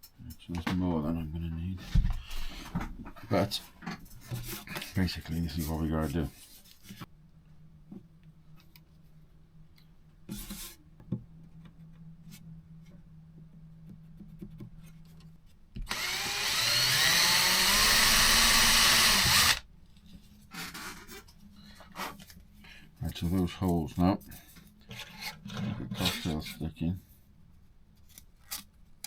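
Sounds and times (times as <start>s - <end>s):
power drill whining: 15.8s - 19.6s.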